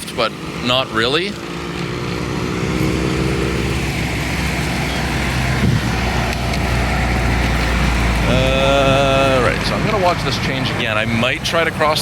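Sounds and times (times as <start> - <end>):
car engine: 0.0 - 12.0
road traffic rumble: 0.0 - 12.0.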